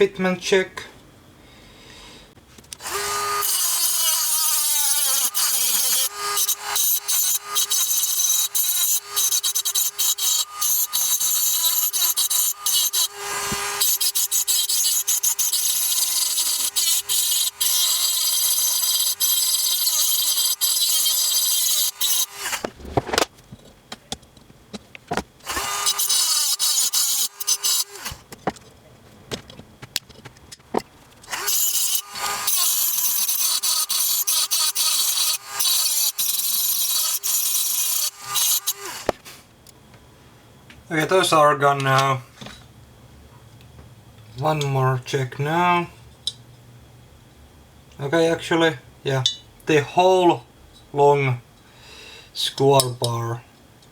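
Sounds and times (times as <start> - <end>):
rotary tool grinding: 2.7 - 23.3, 25.4 - 28.6, 31.1 - 39.2.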